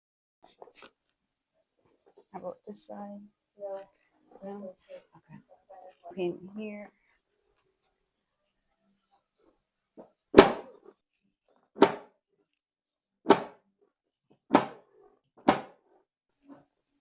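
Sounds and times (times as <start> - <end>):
sharp thumps: 10.4 - 10.8, 11.8 - 12.1, 13.3 - 13.6, 14.5 - 14.8, 15.4 - 15.8.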